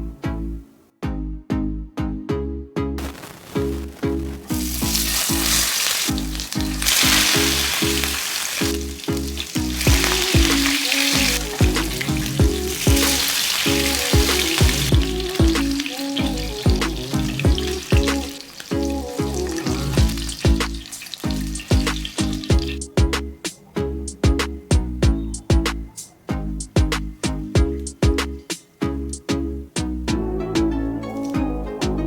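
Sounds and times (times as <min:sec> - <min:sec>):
food sizzling in oil: 0:03.0 - 0:22.9
background music with beat: 0:03.0 - 0:32.0.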